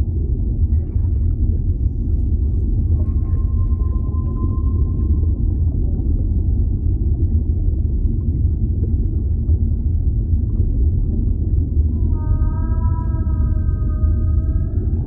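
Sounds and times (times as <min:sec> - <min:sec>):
deep underwater rumble: 0:00.0 - 0:15.0
whale call held tones: 0:03.0 - 0:05.4, 0:12.0 - 0:15.0.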